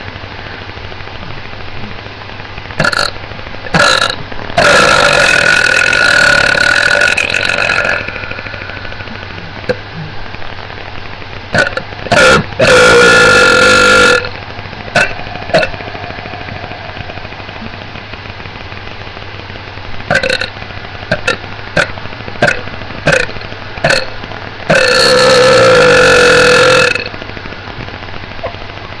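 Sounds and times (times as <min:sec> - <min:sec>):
person burping: 0:02.8 - 0:10.2, 0:11.6 - 0:14.3, 0:15.0 - 0:15.8, 0:20.1 - 0:20.5, 0:21.1 - 0:24.1, 0:24.7 - 0:27.1.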